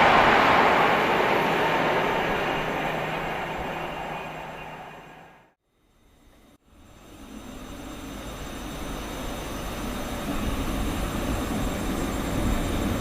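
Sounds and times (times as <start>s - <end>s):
electric train approaching: 0.0s - 5.5s.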